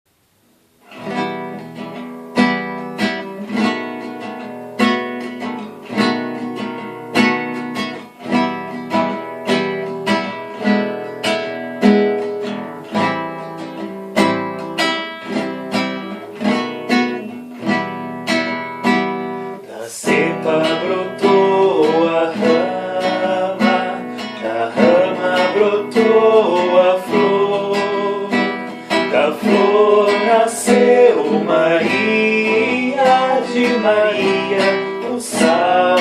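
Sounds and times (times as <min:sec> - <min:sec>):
acoustic guitar strumming: 0:00.6 - 0:36.0.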